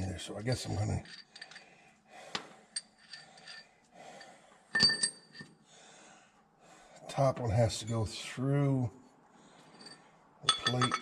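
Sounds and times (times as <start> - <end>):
metal tools clinking and clanking: 0.7 - 1.7, 2.8 - 3.7, 4.7 - 5.5, 9.7 - 11.0.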